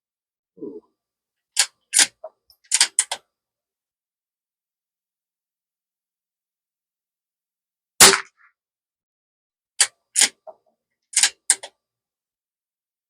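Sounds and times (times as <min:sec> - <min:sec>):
rifle shot: 0:08.0 - 0:08.4
rifle bolt metallic clicks: 0:11.2 - 0:11.7.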